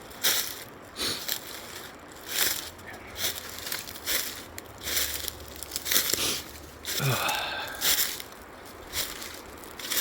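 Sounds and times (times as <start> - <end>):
footsteps crunching through dry leaves: 0.0 - 10.0.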